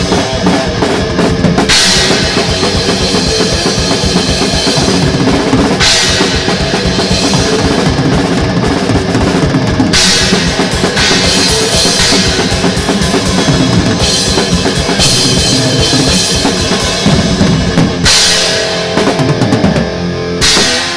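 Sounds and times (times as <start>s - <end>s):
rapid bass drum strokes: 0.0s - 20.9s
thrash metal song: 0.0s - 20.9s
crash cymbal hits: 1.7s - 3.4s, 18.0s - 19.0s, 20.4s - 20.9s.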